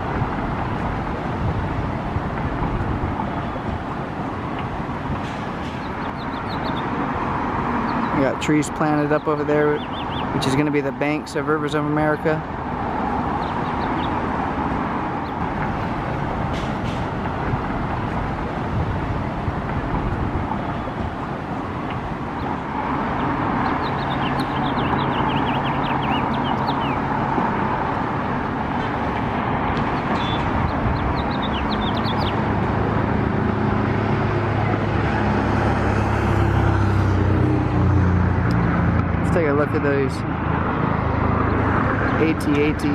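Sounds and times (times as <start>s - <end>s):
traffic rumble: 0.0s - 42.9s
high bird chirps: 9.8s - 10.4s, 23.2s - 27.1s, 30.0s - 32.4s
low car engine hum: 12.0s - 42.9s.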